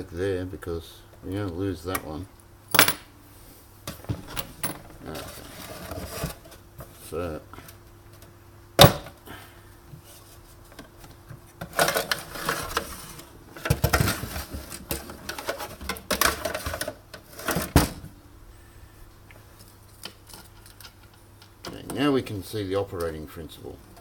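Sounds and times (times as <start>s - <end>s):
parts rattling and scraping: 3.8s - 9.1s, 10.0s - 18.1s.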